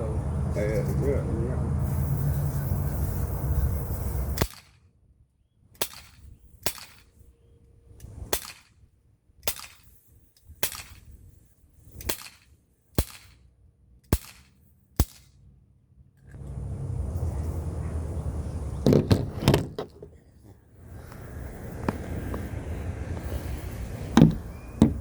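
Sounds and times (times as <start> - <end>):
bb pistol shots: 4.4 - 4.8, 5.8 - 7.0, 8.3 - 8.7, 12.1 - 13.4, 14.1 - 15.3.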